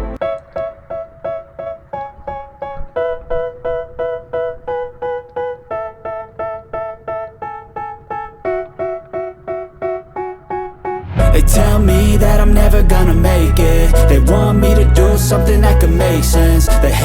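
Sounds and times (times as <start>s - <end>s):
piano-like keyboard chords: 0.0s - 17.0s.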